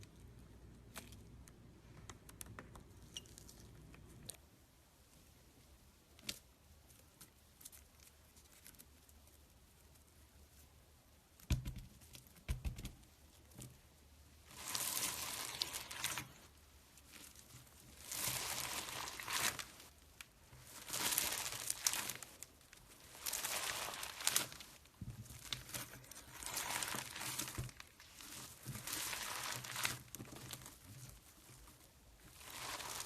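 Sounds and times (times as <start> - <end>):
slime crackling and crinkling: 14.4 - 33.0.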